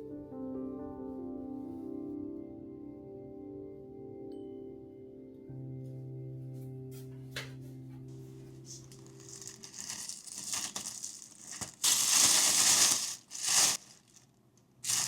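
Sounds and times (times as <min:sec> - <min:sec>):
background music: 0:00.0 - 0:11.2
packaging crinkling: 0:08.7 - 0:15.0.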